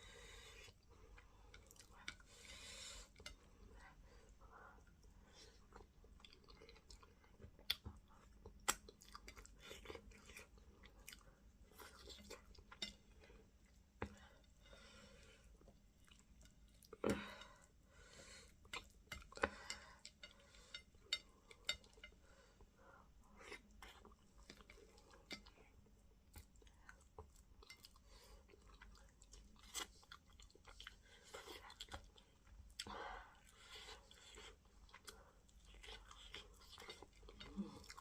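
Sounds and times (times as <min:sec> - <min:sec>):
close chewing: 0:23.4 - 0:38.0.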